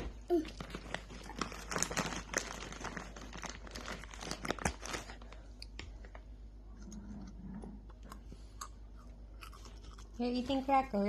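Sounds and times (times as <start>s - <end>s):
plastic wrapper crinkling: 0.0s - 6.2s.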